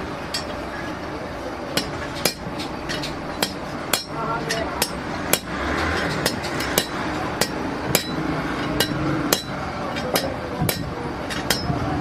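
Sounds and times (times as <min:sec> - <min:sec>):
hammer striking metal: 0:00.3 - 0:00.6, 0:01.7 - 0:11.9.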